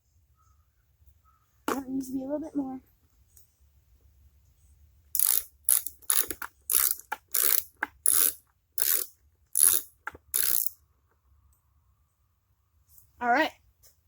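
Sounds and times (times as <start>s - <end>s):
ratchet wrench clicking: 5.2s - 10.8s.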